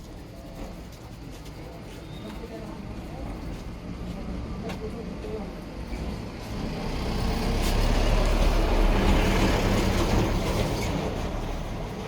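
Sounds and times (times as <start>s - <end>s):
vehicle driving past: 6.4s - 11.8s.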